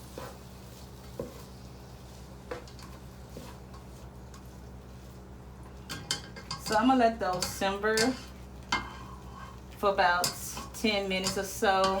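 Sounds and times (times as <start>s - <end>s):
vegetables sizzling in a skillet: 0.0s - 4.0s.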